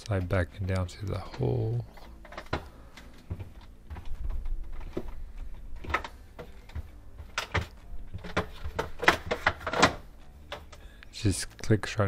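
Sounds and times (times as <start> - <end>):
plastic panel knocks and scrapes: 5.8 - 10.0.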